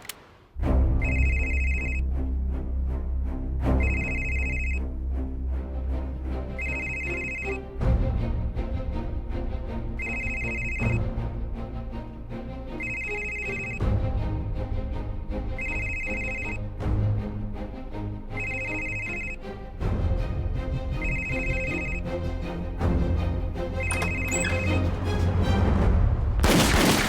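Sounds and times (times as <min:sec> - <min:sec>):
background music with deep notes: 0:00.6 - 0:27.0
mobile phone ringing: 0:01.0 - 0:02.0, 0:03.8 - 0:04.8, 0:06.6 - 0:07.6, 0:10.0 - 0:11.0, 0:12.8 - 0:13.8, 0:15.6 - 0:16.6, 0:18.4 - 0:19.4, 0:21.0 - 0:22.1, 0:23.8 - 0:24.8.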